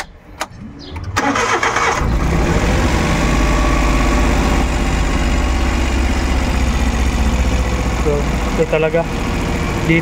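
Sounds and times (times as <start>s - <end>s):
engine cranking and rough idle: 1.0s - 10.0s.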